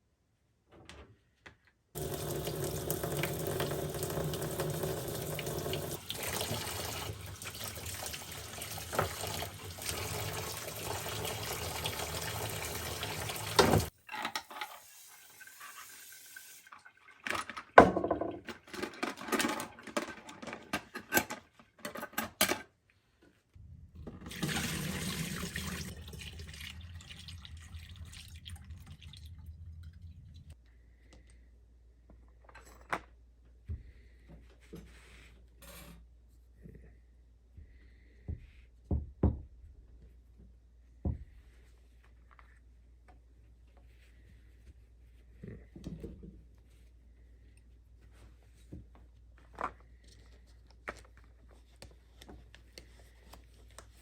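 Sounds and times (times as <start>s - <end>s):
tap water running into sink: 2.0s - 18.3s, 24.0s - 30.6s.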